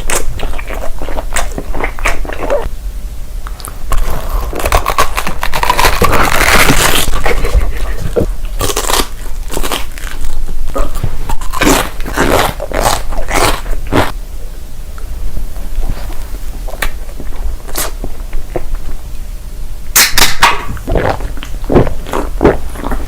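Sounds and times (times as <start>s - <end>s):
crunchy food being chewed: 0.0s - 2.7s, 3.4s - 14.2s, 15.6s - 19.2s, 20.0s - 23.0s.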